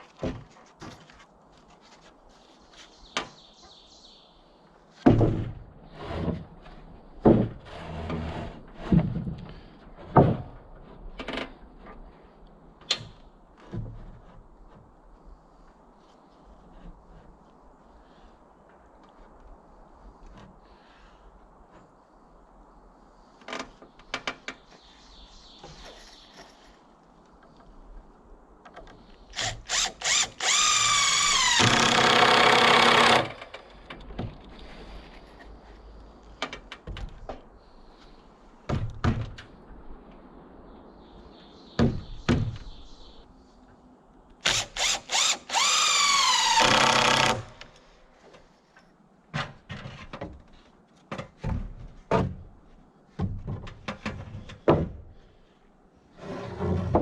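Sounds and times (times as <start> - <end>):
cordless drill whine: 29.4 - 33.3, 44.5 - 47.5.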